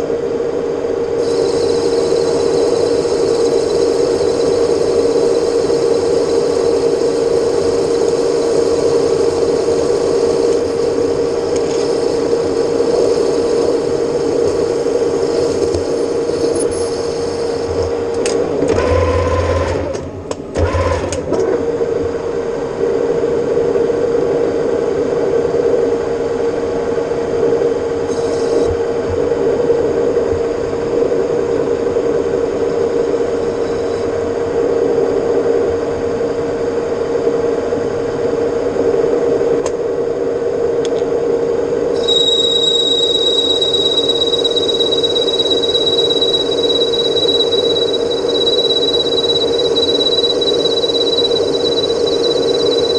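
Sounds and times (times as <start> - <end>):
steady high whine: 0.0 - 52.9
metal lathe running: 1.2 - 20.0, 42.0 - 52.9.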